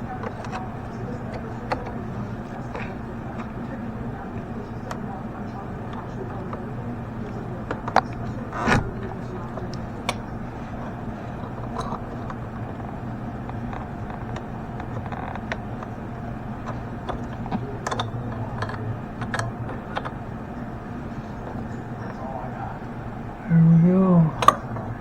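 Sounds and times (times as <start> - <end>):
hand tools clicking and tapping: 0.0 - 3.7, 16.6 - 20.2, 24.4 - 25.0
steady low hum: 0.0 - 25.0.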